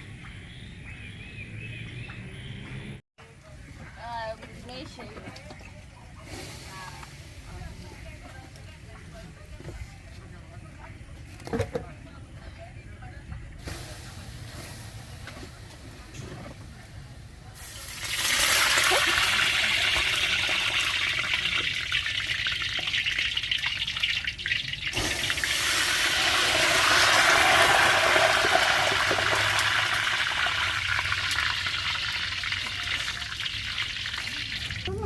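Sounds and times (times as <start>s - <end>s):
water running and splashing: 17.8s - 35.0s.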